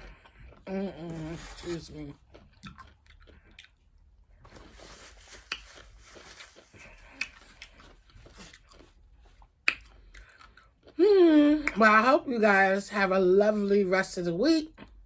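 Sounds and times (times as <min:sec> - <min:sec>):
chewing and biting food: 0:00.0 - 0:11.0
sharp mouth clicks: 0:05.5 - 0:05.7, 0:07.1 - 0:07.7, 0:09.6 - 0:10.0.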